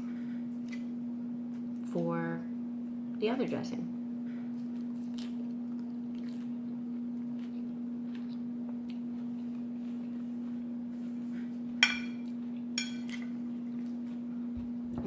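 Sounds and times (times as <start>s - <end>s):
cutlery clinking on dish: 11.8s - 13.3s
low hum: 14.3s - 15.0s.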